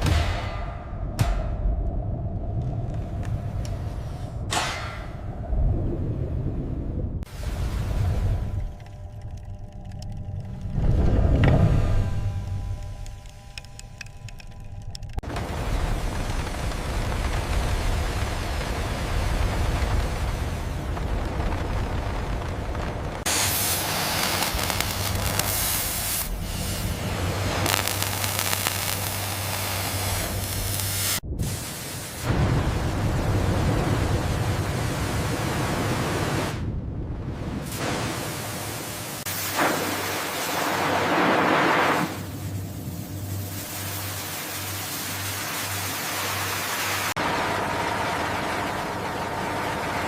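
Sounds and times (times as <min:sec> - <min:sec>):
steady low hum: 0:00.0 - 0:34.4
low engine hum throbbing: 0:07.2 - 0:18.6
rush of water: 0:31.5 - 0:42.4
sea water spray rushing: 0:37.6 - 0:47.2.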